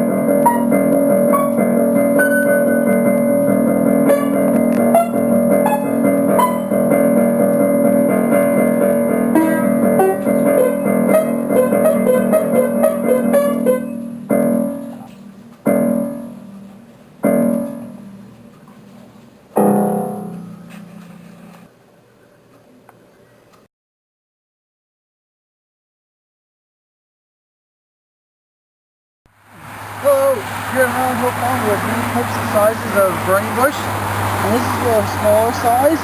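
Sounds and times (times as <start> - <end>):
piano music: 0.0 - 18.7, 19.6 - 21.7, 29.6 - 36.0.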